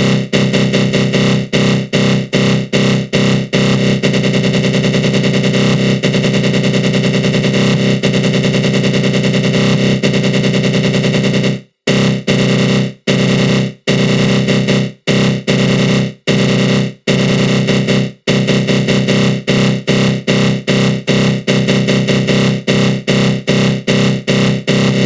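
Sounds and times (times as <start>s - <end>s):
harsh buzzy synth growl: 18.3s - 25.0s.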